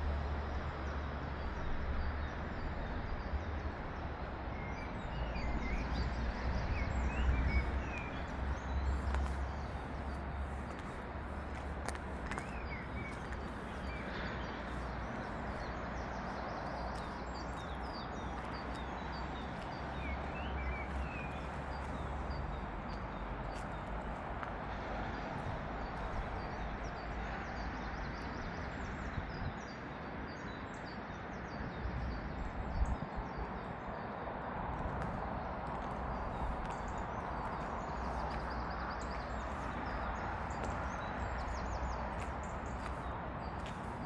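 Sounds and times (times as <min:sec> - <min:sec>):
wind rumble on microphone: 0:00.0 - 0:44.0
small birds chirping: 0:36.3 - 0:44.0.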